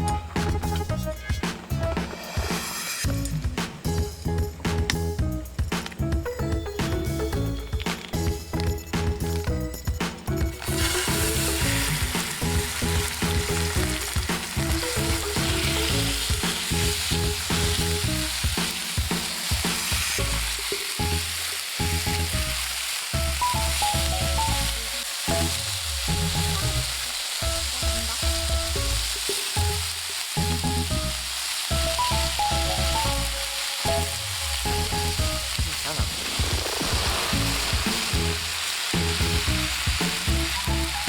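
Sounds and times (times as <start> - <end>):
background music: 0.0 - 41.0
food sizzling in a hot pan: 1.6 - 4.1, 7.0 - 41.0.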